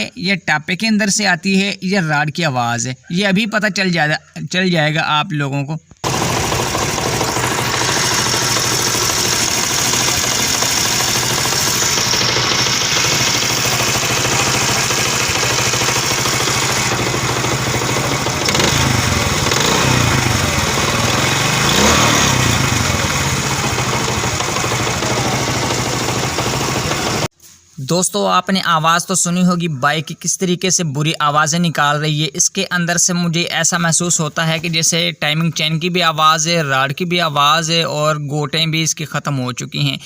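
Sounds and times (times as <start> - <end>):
small engine running rough: 6.0 - 27.3.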